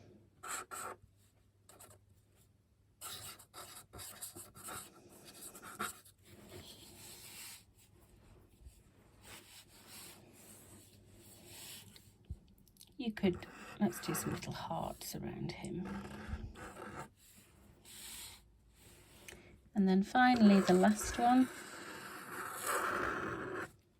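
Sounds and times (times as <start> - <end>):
brush strokes on paper: 3.1 - 12.2.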